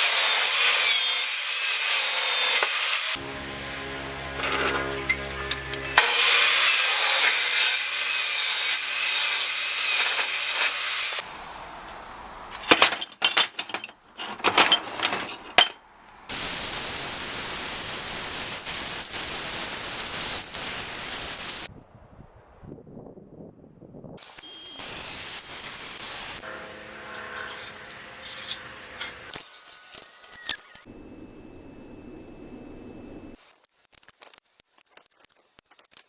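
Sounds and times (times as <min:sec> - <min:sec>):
power tool working steel: 0:00.0 - 0:11.2, 0:24.8 - 0:29.8
short scraping strokes: 0:26.4 - 0:29.3.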